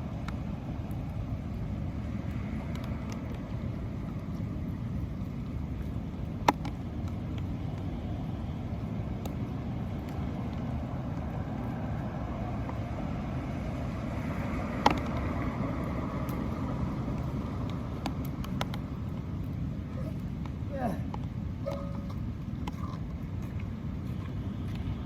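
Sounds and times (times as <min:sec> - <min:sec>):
road traffic rumble: 0:00.0 - 0:25.0.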